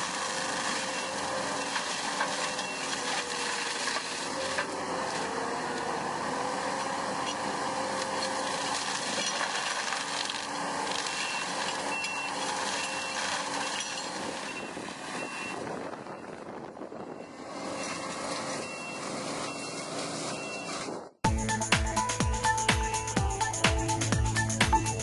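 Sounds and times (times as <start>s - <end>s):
loader with mulcher running: 0.0s - 25.0s
reversing alarm beeping: 11.1s - 16.4s, 18.6s - 20.8s
music with a beat: 21.2s - 25.0s.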